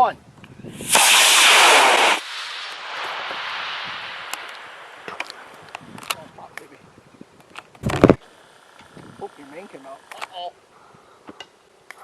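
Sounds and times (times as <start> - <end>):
rumbling hiss: 0.7 - 11.2
rocket motor blast: 0.8 - 6.1.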